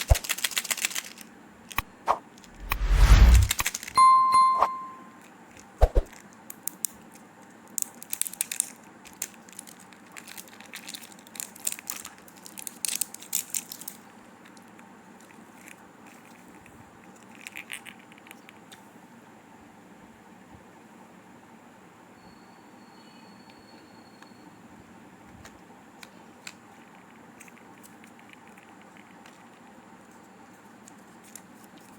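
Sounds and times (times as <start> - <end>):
plastic wrappers crinkling: 0.0 - 1.2, 8.0 - 14.0
brief ringing tone: 2.8 - 5.2.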